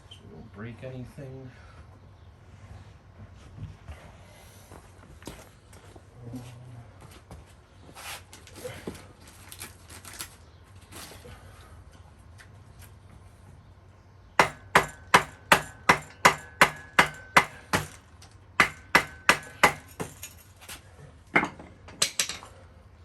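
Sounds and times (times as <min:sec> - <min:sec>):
hammer striking wood block: 0:14.4 - 0:18.0, 0:18.6 - 0:20.2.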